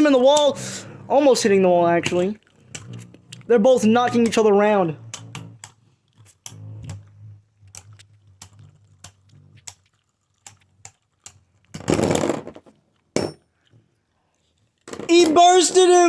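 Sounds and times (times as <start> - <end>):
top bursting apart clatter: 11.7 - 13.4.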